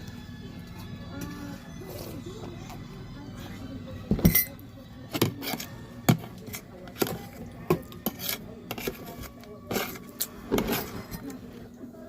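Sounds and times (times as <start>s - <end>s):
cutlery scraping on a plate: 5.1s - 11.3s.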